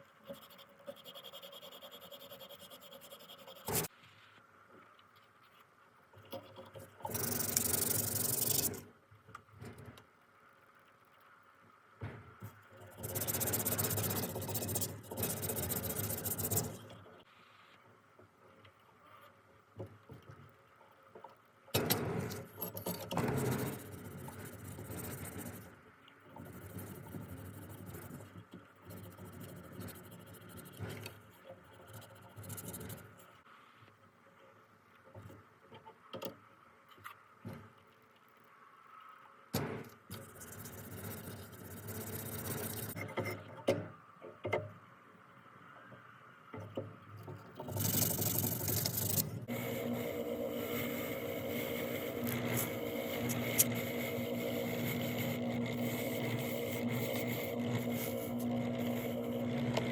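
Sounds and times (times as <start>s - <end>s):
abrasive scraping by hand: 40.1s - 43.5s, 47.6s - 59.9s.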